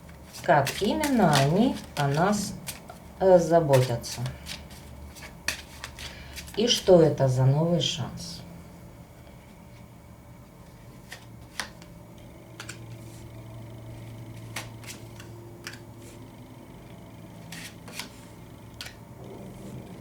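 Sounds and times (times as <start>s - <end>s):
steady low hum: 0.0s - 20.0s
cards clicking and snapping: 0.1s - 3.0s, 3.7s - 6.8s, 11.0s - 11.9s, 12.5s - 13.1s, 14.3s - 16.2s, 17.4s - 19.0s.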